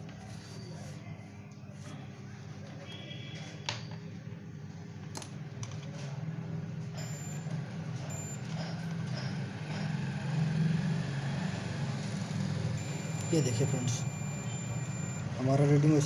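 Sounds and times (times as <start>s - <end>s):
steady low hum: 6.6s - 8.9s, 12.8s - 15.5s.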